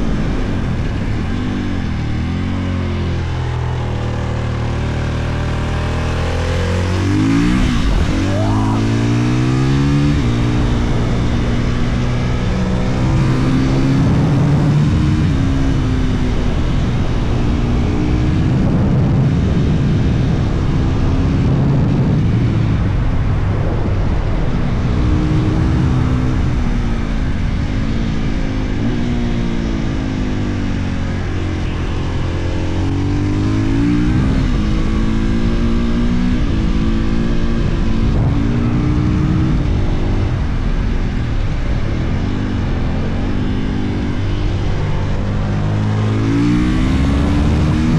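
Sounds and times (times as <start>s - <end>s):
rushing air noise: 0.0s - 16.6s
motorcycle engine revving: 0.0s - 47.9s.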